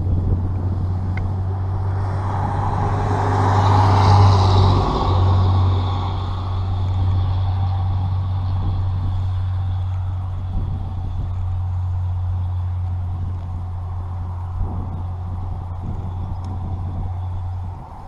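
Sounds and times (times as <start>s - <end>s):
rushing noise: 0.0s - 12.6s
low engine hum: 0.0s - 18.0s.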